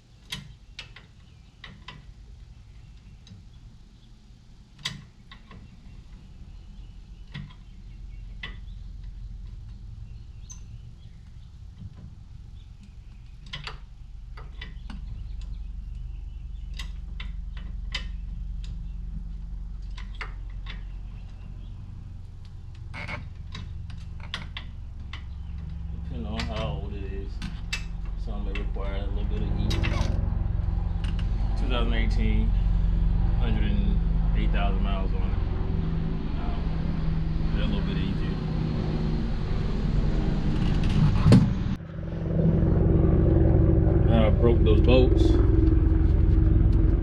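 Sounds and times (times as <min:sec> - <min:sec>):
steady low hum: 0:00.0 - 0:47.0.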